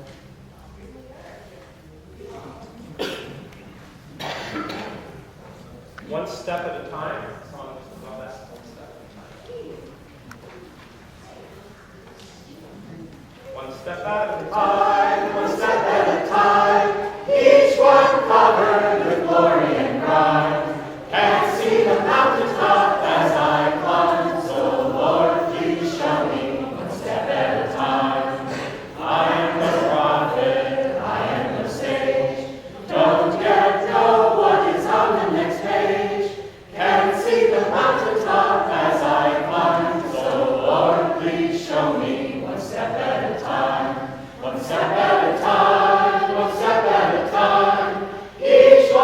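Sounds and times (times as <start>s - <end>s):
group singing in harmony: 13.9s - 49.0s.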